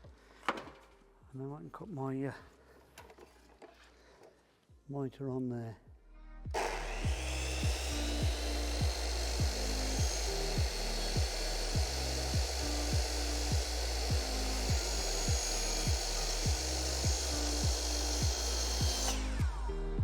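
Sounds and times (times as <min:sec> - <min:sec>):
background music with steady beat: 0:04.6 - 0:20.0
power saw cutting wood: 0:06.6 - 0:20.0.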